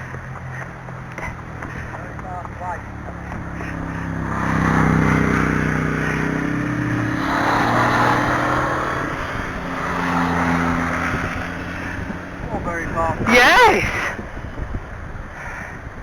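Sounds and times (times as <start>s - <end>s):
road traffic passing: 0.0s - 16.0s.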